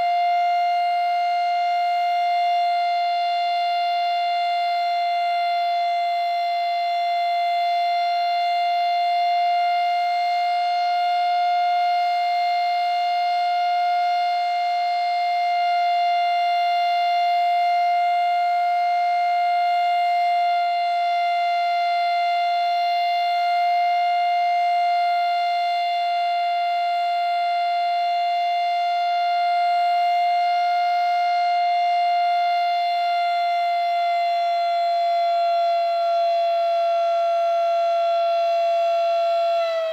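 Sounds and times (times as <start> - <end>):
rotating warning siren: 0.0 - 39.9.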